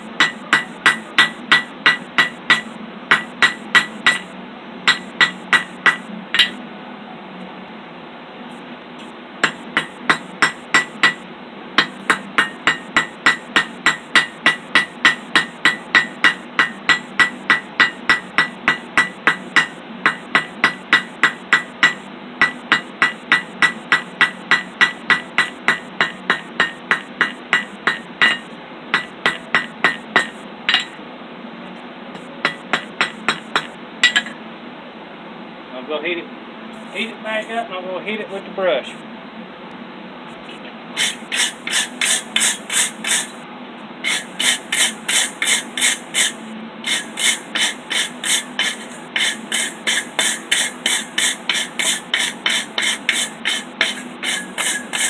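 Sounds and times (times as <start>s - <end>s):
hammer ringing on anvil: 4.9s - 6.6s, 11.8s - 31.0s, 32.5s - 34.4s, 46.9s - 55.0s.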